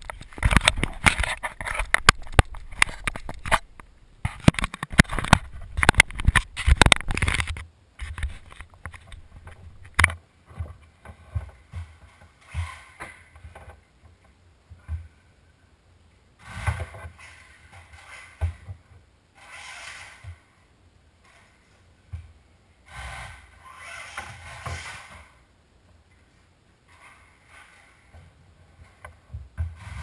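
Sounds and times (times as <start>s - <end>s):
toy car motor and tyres rushing: 19.4s - 20.4s, 22.9s - 25.4s.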